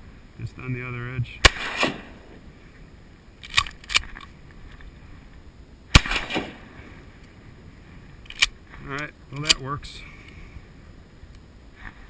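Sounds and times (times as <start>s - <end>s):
shotgun shot: 1.4s - 2.2s, 5.9s - 6.7s.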